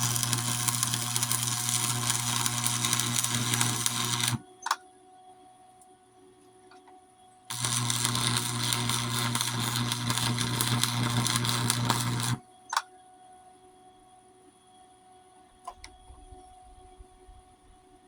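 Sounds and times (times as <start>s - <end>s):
crackling welding arc: 0.0s - 4.4s, 7.5s - 12.4s
electrical hum: 0.0s - 4.6s, 7.5s - 12.4s.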